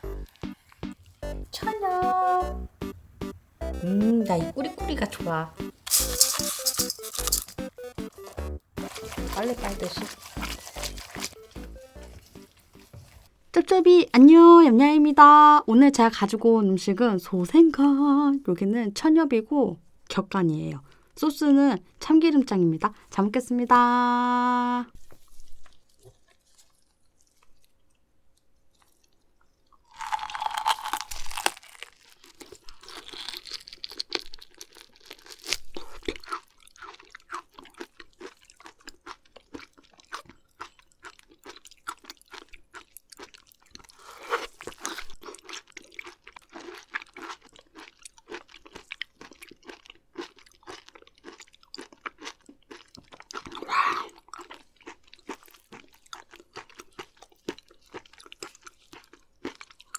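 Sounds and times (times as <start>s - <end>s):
chewing clicks and crunches: 5.9s - 12.9s, 25.6s - 59.9s.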